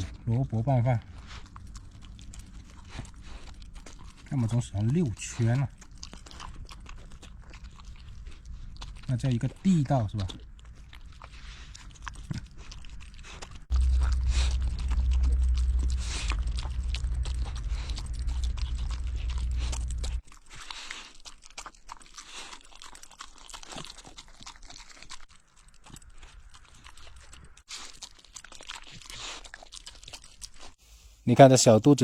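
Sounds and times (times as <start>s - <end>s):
pet crunching and chewing food: 0.0s - 30.8s
loud low rumble: 13.7s - 20.2s.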